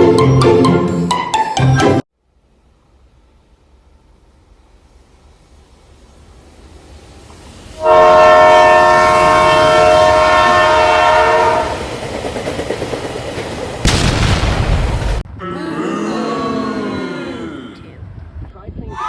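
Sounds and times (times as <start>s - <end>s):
train rumbling: 2.4s - 15.3s, 16.3s - 19.0s
locomotive air horn chord: 7.8s - 11.8s
loud noisy blast: 13.8s - 15.2s.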